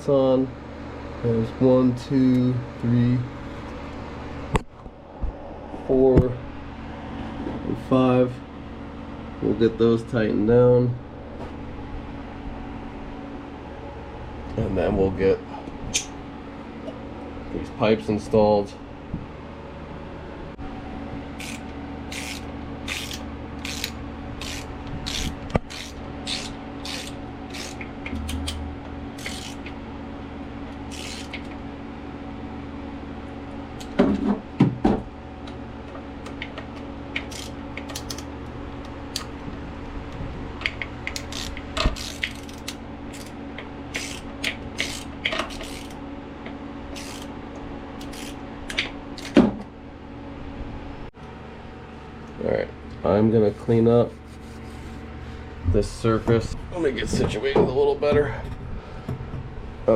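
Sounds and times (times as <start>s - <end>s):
machinery hum: 0.0s - 59.9s
ratchet wrench clicking: 21.4s - 27.9s, 29.2s - 29.6s, 30.9s - 31.4s, 41.1s - 43.3s, 43.9s - 46.0s, 46.9s - 47.3s.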